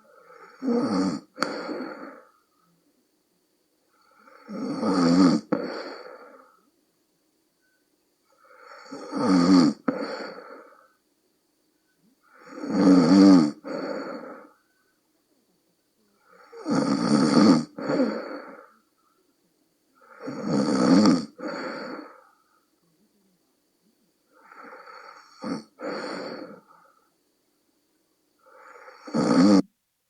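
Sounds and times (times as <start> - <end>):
woman snoring: 0.0 - 2.3, 3.9 - 6.6, 8.3 - 10.9, 12.2 - 14.6, 16.1 - 18.9, 20.0 - 22.4, 24.3 - 27.0, 28.4 - 29.7.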